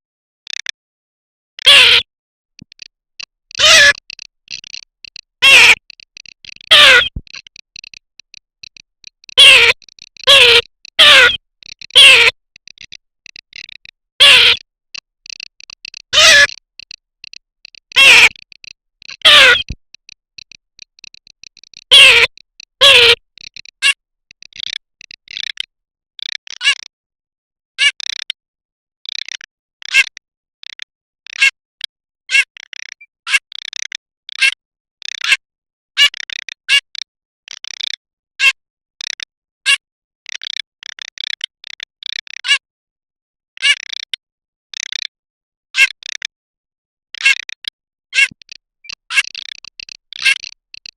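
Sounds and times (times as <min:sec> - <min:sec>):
sharp duck calls: 0:01.6 - 0:02.1, 0:02.7 - 0:16.6, 0:17.2 - 0:19.8, 0:20.9 - 0:25.6, 0:48.2 - 0:50.9
duck rapid clicking calls: 0:01.6 - 0:26.9, 0:27.8 - 0:28.4, 0:29.1 - 0:31.6, 0:32.3 - 0:35.4, 0:36.0 - 0:42.6, 0:43.6 - 0:44.2, 0:44.8 - 0:45.2, 0:45.8 - 0:46.4, 0:47.2 - 0:50.9
dry rattle of rapid ticks: 0:02.6 - 0:26.8, 0:32.6 - 0:34.4, 0:36.1 - 0:38.0, 0:47.2 - 0:50.9
duck nasal calls: 0:03.5 - 0:04.0, 0:05.4 - 0:05.8, 0:06.6 - 0:07.2, 0:09.4 - 0:12.3, 0:14.2 - 0:14.6, 0:16.1 - 0:16.6, 0:17.9 - 0:18.4, 0:19.1 - 0:19.7, 0:21.9 - 0:23.2.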